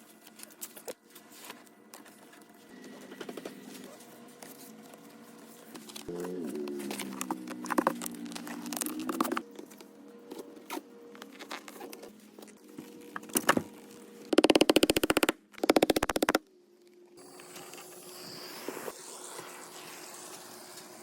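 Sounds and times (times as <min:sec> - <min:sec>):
rapid mechanical knocking: 0:14.4 - 0:16.4.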